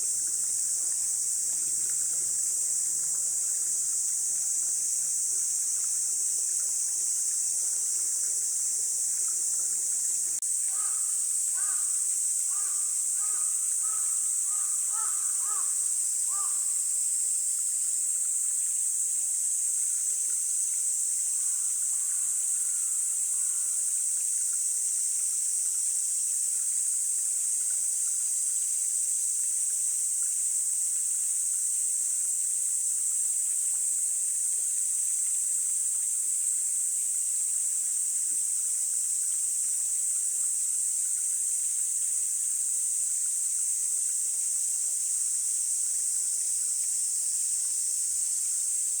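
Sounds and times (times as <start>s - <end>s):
insects buzzing: 0.0s - 17.0s, 21.3s - 24.0s
mountain stream: 0.0s - 49.0s
faint bird calls: 10.7s - 16.6s
crow cawing: 10.7s - 16.7s.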